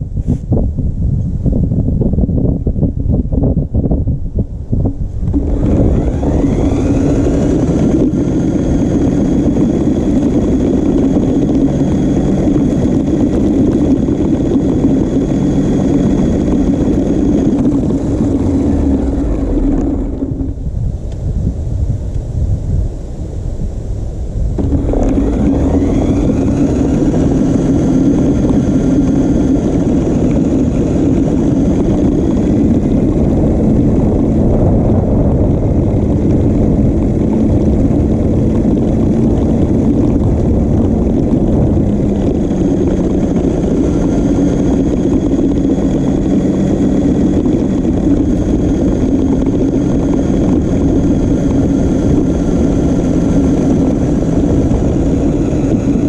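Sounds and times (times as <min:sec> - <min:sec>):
rumble of chassis and tyres: 0:00.0 - 0:56.0
toy truck motor whining: 0:05.3 - 0:13.2.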